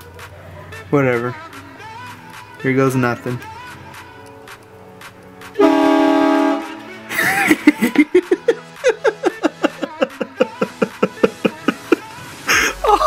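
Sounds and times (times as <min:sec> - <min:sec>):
train horn blasting: 0:05.6 - 0:07.0
bursts of laughter: 0:07.1 - 0:13.0
person screaming: 0:09.8 - 0:13.0.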